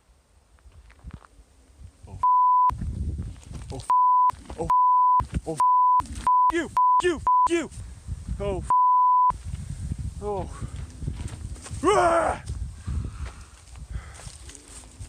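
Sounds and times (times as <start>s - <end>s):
censor bleep tone: 2.2s - 2.8s, 3.9s - 7.5s, 8.7s - 9.3s
person shouting swearing: 6.5s - 7.7s, 11.8s - 12.5s.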